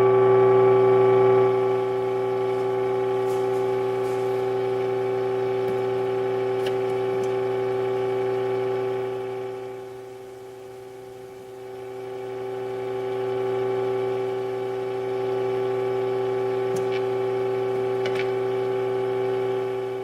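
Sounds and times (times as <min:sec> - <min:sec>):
radio speaker test tone: 0:00.0 - 0:10.0.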